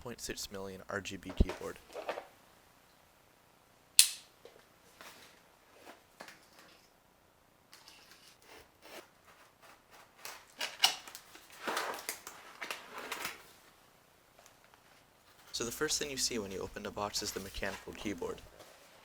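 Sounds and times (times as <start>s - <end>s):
cardboard and packaging rustling: 1.2s - 2.3s, 4.9s - 7.0s, 7.7s - 13.8s, 14.4s - 19.0s
box snapping open: 4.0s - 4.3s.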